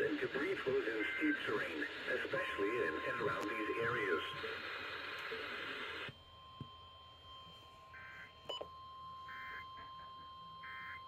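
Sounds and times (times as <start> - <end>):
radio hiss: 0.0 - 6.1
two-tone data bursts: 0.0 - 6.1, 8.0 - 11.0
faint steady high tone: 2.3 - 5.3, 6.1 - 11.0.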